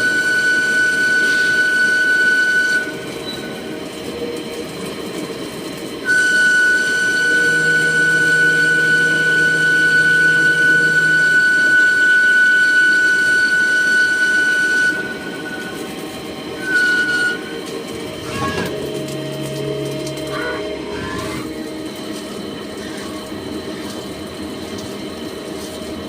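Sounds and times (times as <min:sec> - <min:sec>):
lathe high-pitched whine: 0:00.0 - 0:26.0
rough machining noise: 0:00.0 - 0:26.0.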